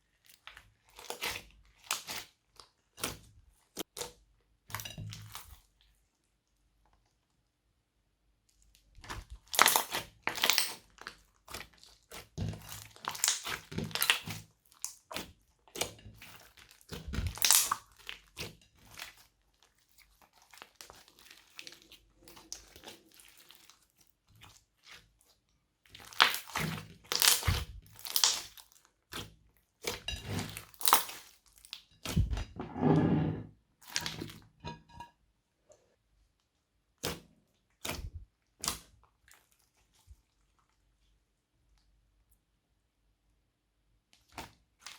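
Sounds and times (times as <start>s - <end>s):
slime crackling squelches: 0.0s - 4.0s, 8.5s - 32.5s, 35.6s - 41.8s.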